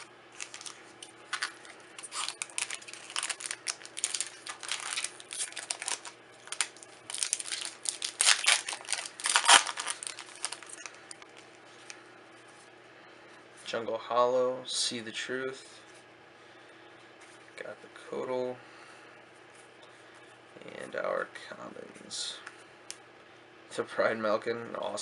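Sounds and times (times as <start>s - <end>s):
foil wrapper tearing and crinkling: 0.0s - 11.0s.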